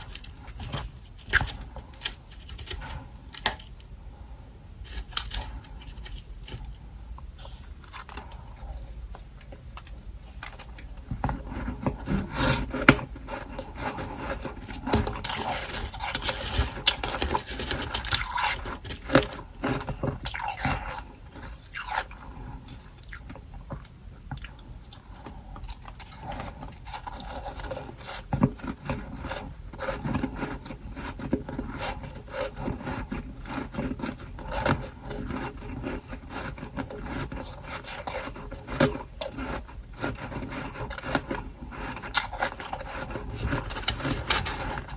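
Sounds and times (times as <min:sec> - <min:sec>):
crunching and scraping of frost: 0:11.4 - 0:22.6, 0:26.1 - 0:44.9.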